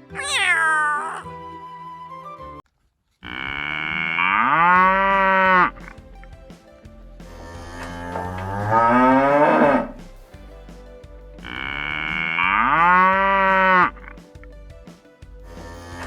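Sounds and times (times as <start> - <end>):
light background music: 0.0 - 2.6, 3.9 - 16.0
cow mooing: 3.2 - 5.7.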